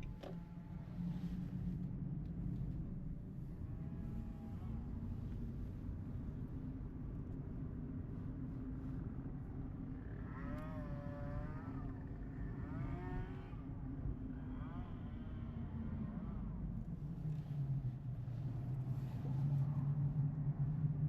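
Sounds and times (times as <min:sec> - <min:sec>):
road rumble inside car: 0:00.0 - 0:21.0.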